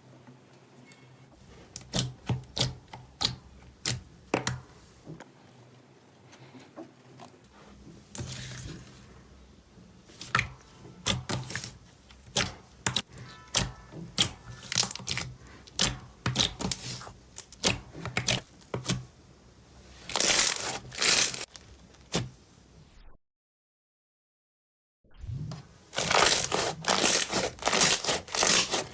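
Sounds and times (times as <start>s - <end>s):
slime squishing: 10.0s - 19.1s, 19.8s - 22.4s, 25.5s - 28.9s
slime popping and crackling: 20.1s - 22.2s, 26.0s - 28.9s.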